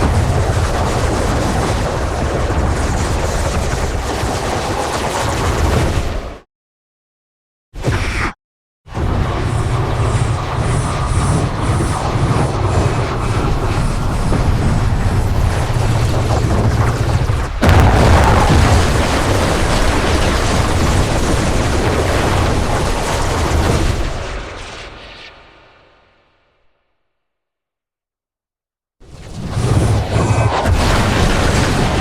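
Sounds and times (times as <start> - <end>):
explosion-like blast: 17.6 - 26.3, 29.6 - 32.0.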